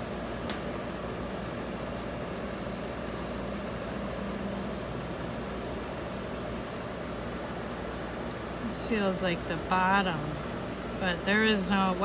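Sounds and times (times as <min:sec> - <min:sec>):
low background hum: 0:00.0 - 0:12.0
pencil scratching on paper: 0:07.2 - 0:12.0.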